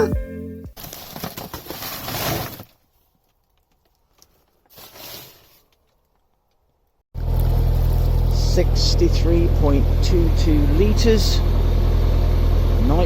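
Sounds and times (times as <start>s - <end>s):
low engine hum: 7.2s - 13.0s.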